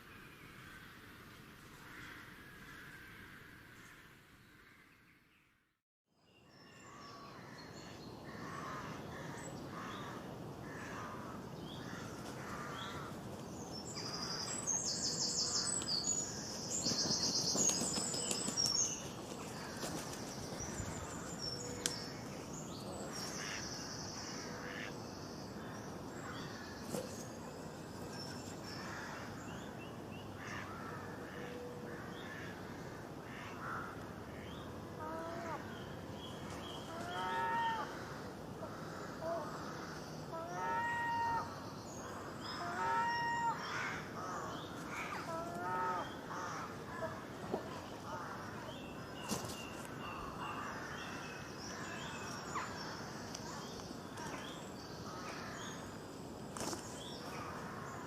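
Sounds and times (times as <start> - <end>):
outdoor background hiss: 0.0 - 58.0
birds calling and chirping: 6.8 - 58.0
cawing calls: 8.3 - 13.2, 30.4 - 34.0, 36.8 - 47.2.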